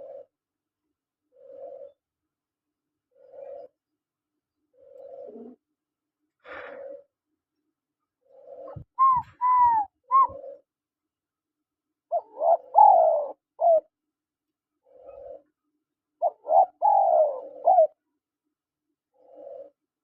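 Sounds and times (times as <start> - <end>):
dove cooing: 0.0 - 0.3, 1.4 - 2.0, 3.1 - 3.8, 4.7 - 5.7, 6.4 - 7.1, 8.2 - 10.7, 12.1 - 13.9, 14.8 - 15.5, 16.2 - 18.0, 19.2 - 19.8.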